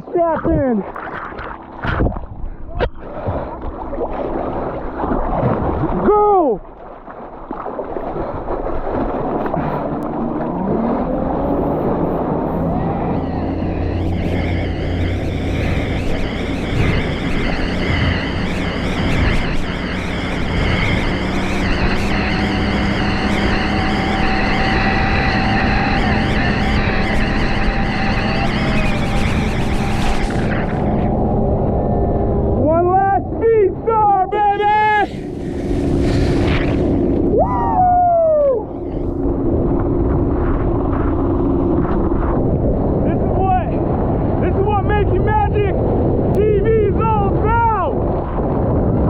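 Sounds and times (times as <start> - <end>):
wind rumble on microphone: 0.0 - 49.0
person yelling: 5.9 - 6.6, 32.8 - 35.2, 37.4 - 38.7
vehicle engine running: 9.7 - 32.6
steady hum: 9.8 - 42.6.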